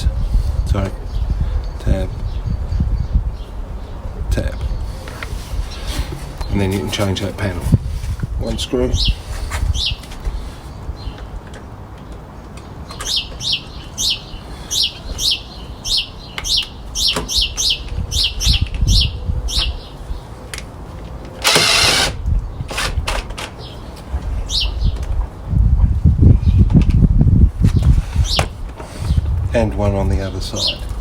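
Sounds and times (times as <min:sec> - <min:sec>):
low rumbling: 0:00.0 - 0:11.8
small bird chirping: 0:09.0 - 0:11.3, 0:12.8 - 0:20.3, 0:24.4 - 0:25.0.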